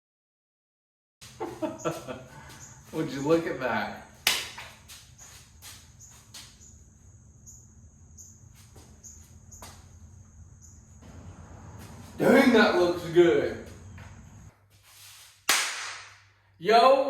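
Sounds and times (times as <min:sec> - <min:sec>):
cricket chirping: 0:01.2 - 0:14.5.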